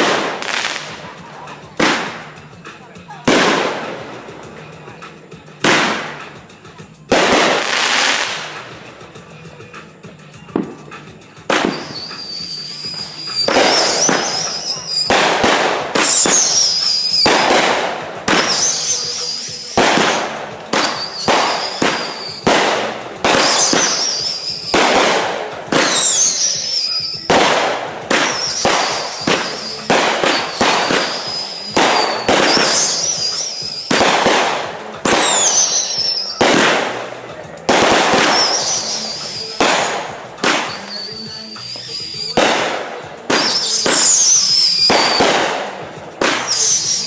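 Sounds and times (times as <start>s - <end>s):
fireworks bangs: 0.0s - 47.0s
fireworks whistling: 0.0s - 47.0s.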